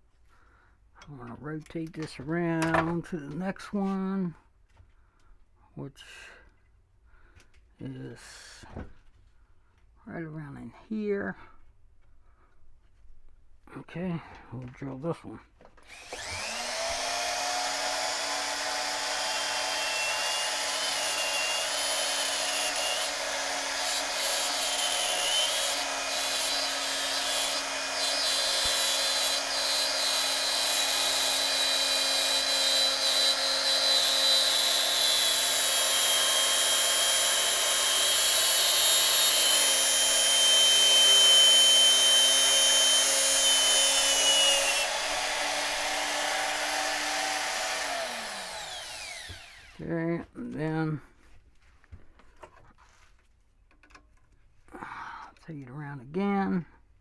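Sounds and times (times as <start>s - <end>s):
drill motor hum: 15.8s - 49.9s.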